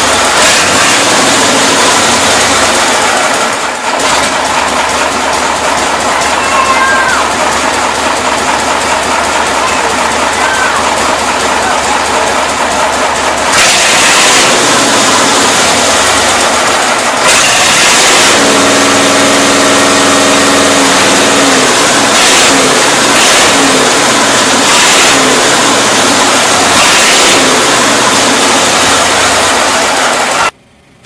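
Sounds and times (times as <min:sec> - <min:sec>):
engine revving: 0:00.0 - 0:30.6.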